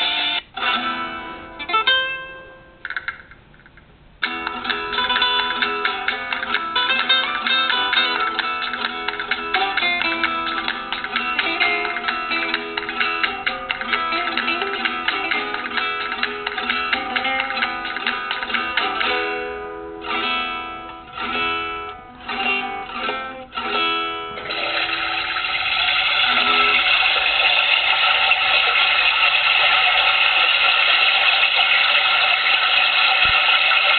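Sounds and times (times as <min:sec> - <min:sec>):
plucked-string tune: 0:00.0 - 0:03.6, 0:04.2 - 0:33.9
toilet flush water rushing: 0:24.4 - 0:33.9.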